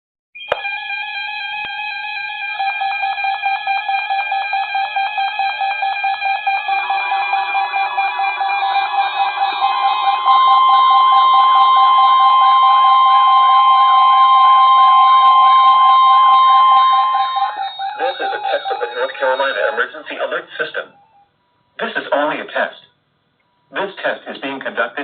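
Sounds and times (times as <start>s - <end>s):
steady high alert tone: 5.5s - 22.0s
faint rhythmic warbling: 14.7s - 21.8s.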